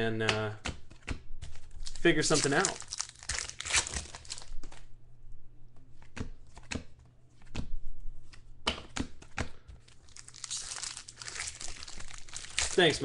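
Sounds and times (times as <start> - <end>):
trading cards snapping and clicking: 0.2 - 1.6, 8.3 - 9.6.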